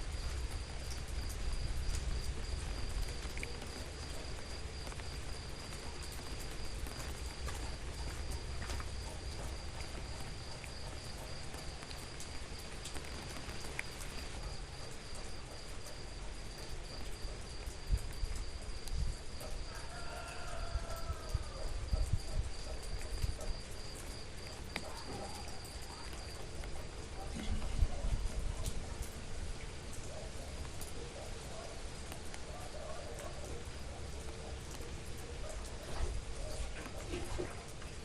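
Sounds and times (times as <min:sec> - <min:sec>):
steady rain hiss: 0:00.0 - 0:38.0
high-pitched insect trill: 0:13.6 - 0:26.4.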